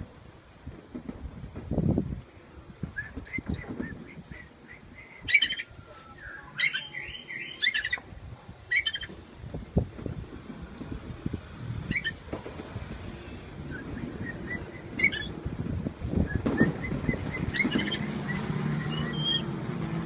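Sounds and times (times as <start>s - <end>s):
bird chirping: 3.2s - 3.7s, 5.0s - 8.1s, 8.7s - 9.1s, 10.8s - 11.2s, 13.7s - 15.4s, 16.7s - 19.5s.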